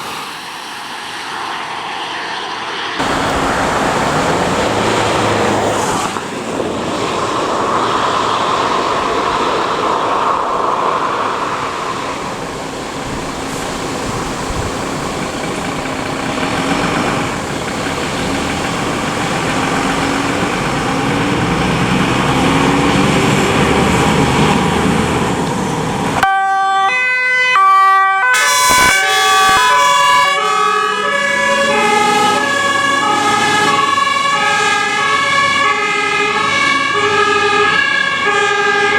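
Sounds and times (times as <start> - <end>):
fire engine driving: 0.0 - 38.9
two-tone siren: 26.2 - 38.9.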